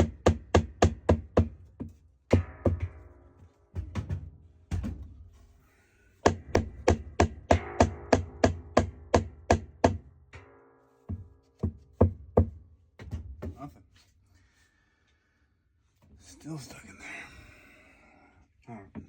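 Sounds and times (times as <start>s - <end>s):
sharp knocks on metal: 0.0s - 3.1s, 3.8s - 5.2s, 6.2s - 10.5s, 11.1s - 13.7s.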